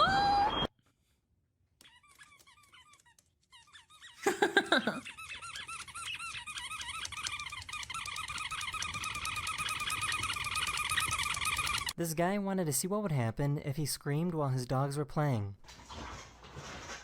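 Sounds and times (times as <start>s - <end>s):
squeaky toy squeaking: 1.8s - 4.2s, 5.0s - 12.0s.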